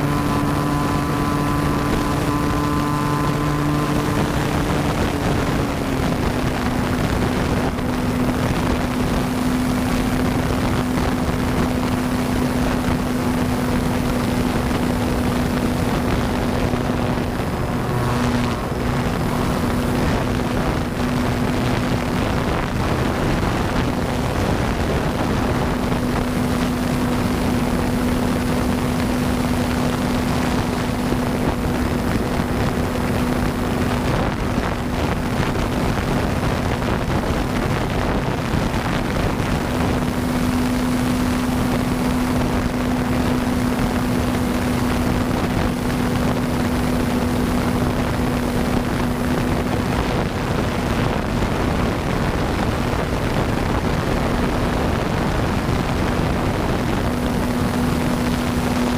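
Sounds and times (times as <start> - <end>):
model plane motor droning: 0.0 - 36.2
wind noise on microphone: 0.0 - 58.9.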